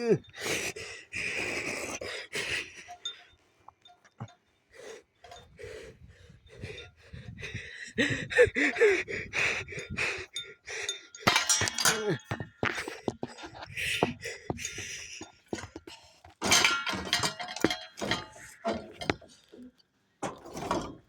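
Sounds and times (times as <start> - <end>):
metal parts clinking: 11.2 - 12.7, 16.4 - 19.6
loud ringing metal clang: 11.3 - 12.2.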